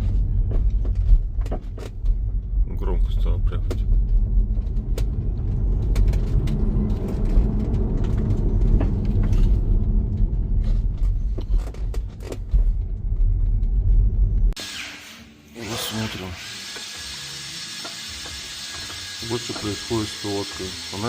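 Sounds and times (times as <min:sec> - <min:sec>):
car road rumble: 0:00.0 - 0:14.6.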